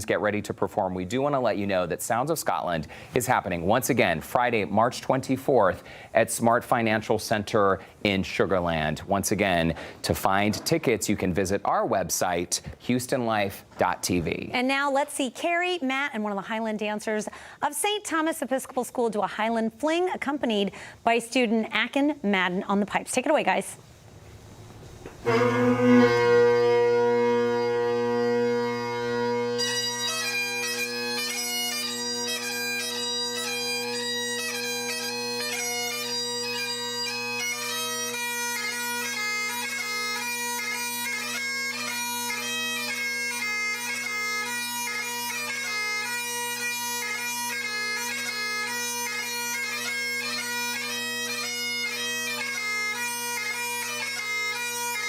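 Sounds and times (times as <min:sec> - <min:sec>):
bagpipe chanter melody: 0:25.2 - 0:55.0
bagpipe drones: 0:25.2 - 0:55.0.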